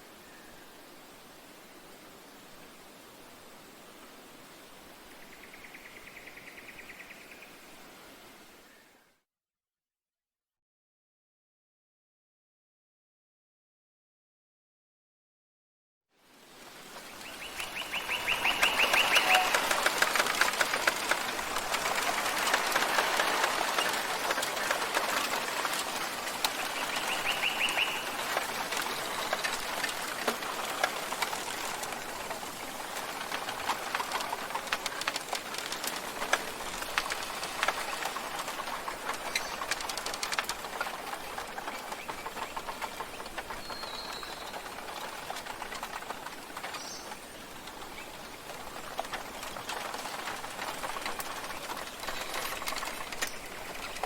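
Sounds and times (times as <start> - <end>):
steady rushing wash: 16.5 - 43.5
small clicks and crackles: 16.6 - 54.0
bird chirps: 17.3 - 19.8, 26.6 - 28.2, 43.5 - 44.6.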